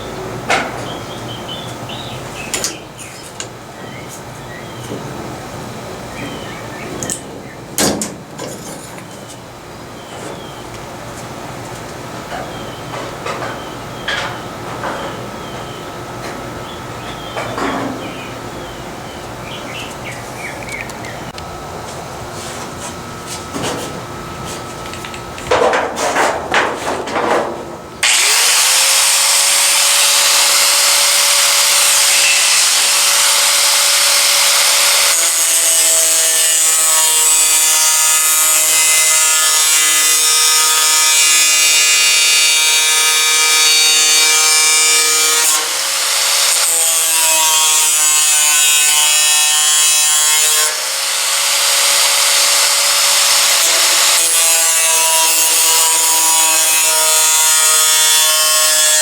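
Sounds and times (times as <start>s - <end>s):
power cutting tool cutting sheet metal: 28.0s - 59.0s.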